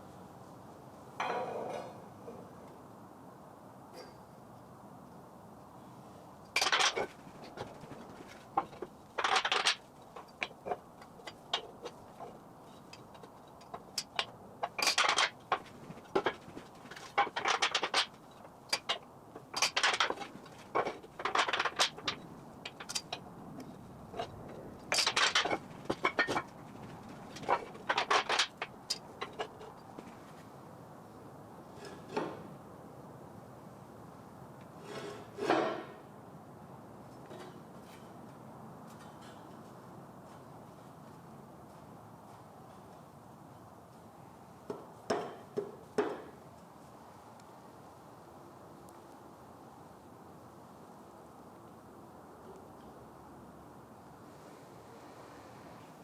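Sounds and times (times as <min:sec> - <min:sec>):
low steady background noise: 0:00.0 - 0:56.0
metallic clinking and clattering: 0:06.5 - 0:30.3.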